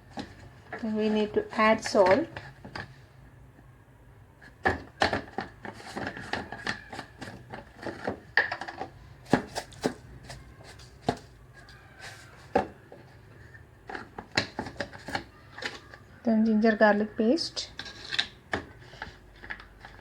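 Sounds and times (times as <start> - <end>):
crab shell pieces knocking: 4.6 - 12.9.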